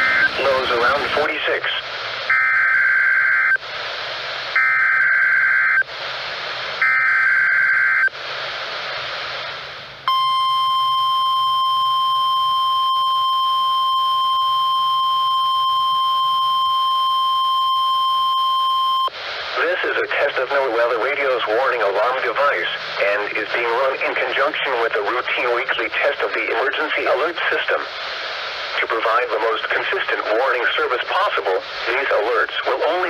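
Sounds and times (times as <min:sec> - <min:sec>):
buzzy digital header bursts: 0:00.0 - 0:01.3
steady warning alarm tone: 0:00.0 - 0:01.3, 0:10.1 - 0:19.1
radio hiss: 0:00.0 - 0:33.0.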